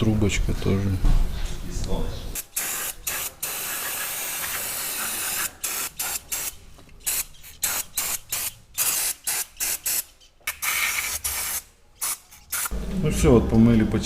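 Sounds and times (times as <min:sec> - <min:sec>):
aerosol spray hissing: 0:02.4 - 0:12.8.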